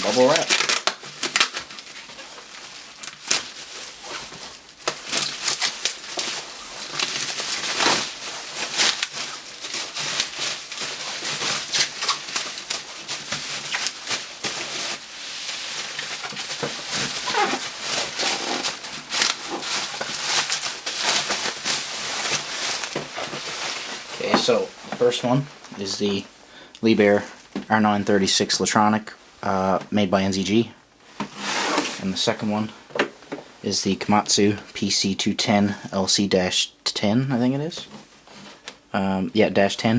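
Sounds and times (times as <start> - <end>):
plastic packaging crinkling: 0.0 - 26.3.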